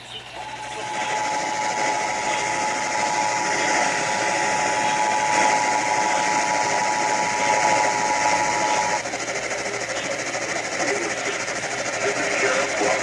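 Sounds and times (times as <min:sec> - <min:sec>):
radio signal hiss: 0:00.0 - 0:13.0
two-tone alarm: 0:00.4 - 0:09.3.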